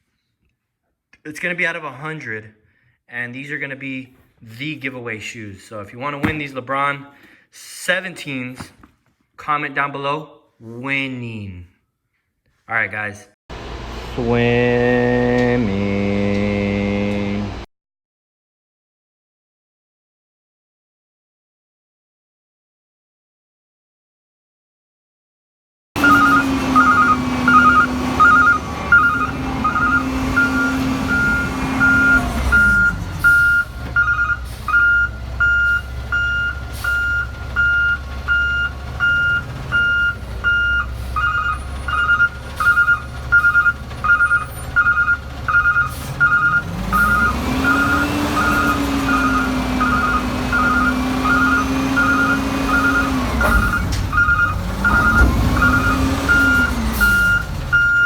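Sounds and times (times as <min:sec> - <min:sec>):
heavy engine running: 0:13.5 - 0:17.6, 0:26.0 - 0:58.0
vehicle reversing alarm beeping: 0:26.0 - 0:58.0.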